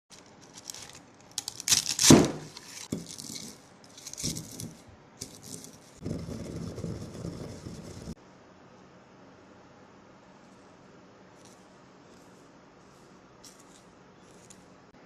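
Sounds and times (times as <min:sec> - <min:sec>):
dry brittle crunching: 0:00.1 - 0:04.6.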